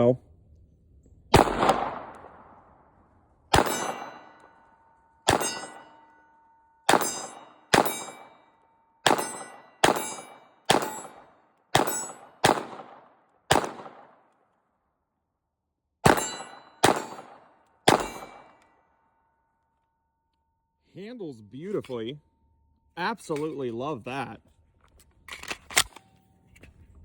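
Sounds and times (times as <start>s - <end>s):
pistol shots: 1.3s - 2.7s, 3.5s - 4.5s, 5.3s - 6.0s, 6.9s - 8.4s, 9.0s - 14.3s, 16.0s - 18.6s.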